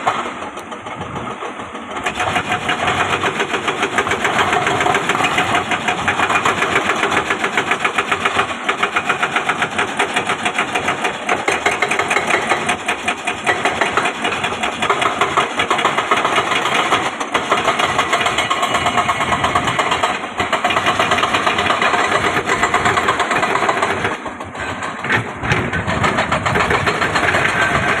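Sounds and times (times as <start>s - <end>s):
diesel engine running: 0.0s - 28.0s.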